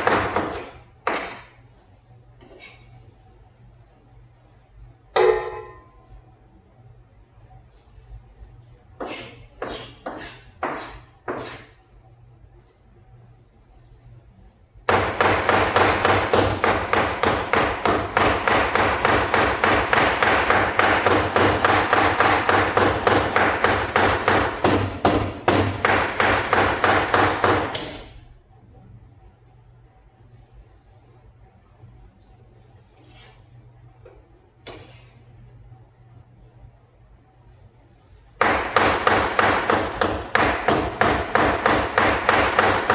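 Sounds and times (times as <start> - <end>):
cleaver chopping meat: 9.0 - 11.7, 14.9 - 28.0, 38.4 - 42.9.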